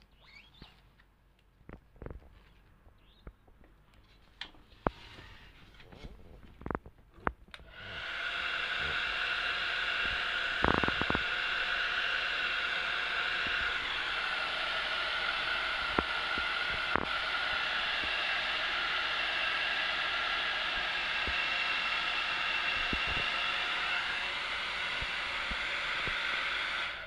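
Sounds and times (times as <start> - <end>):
hot-air blower whining hiss: 7.6 - 27.0.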